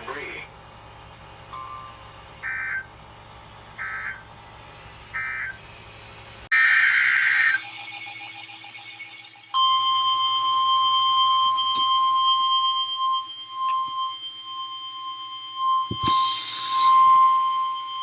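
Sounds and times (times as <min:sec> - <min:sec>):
high steady alarm beep: 0:09.6 - 0:18.0.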